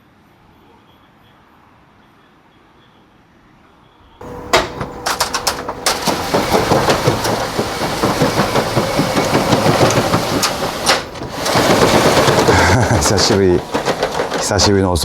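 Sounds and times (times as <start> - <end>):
metal shutters sliding on track: 4.2 - 15.0.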